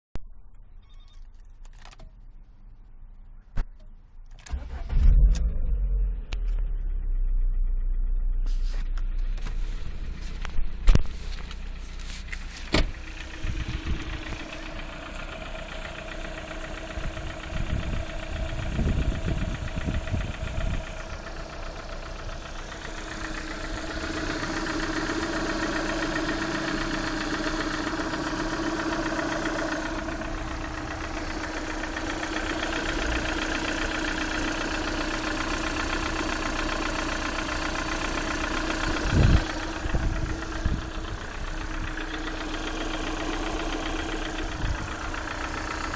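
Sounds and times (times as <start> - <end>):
low bumps: 6.2 - 26.7
car engine idling with tapping: 6.2 - 45.9.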